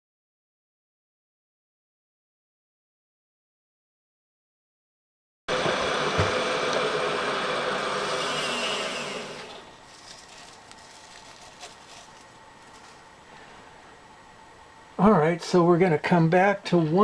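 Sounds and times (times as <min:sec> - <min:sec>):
milling machine whirring: 0:05.5 - 0:13.3.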